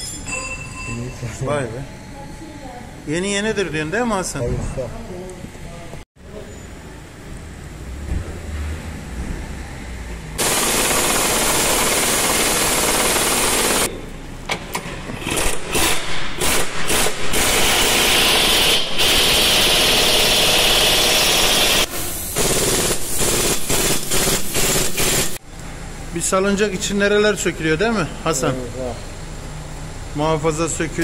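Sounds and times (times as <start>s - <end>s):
pneumatic impact wrench rattling: 10.4s - 13.9s, 14.6s - 25.4s.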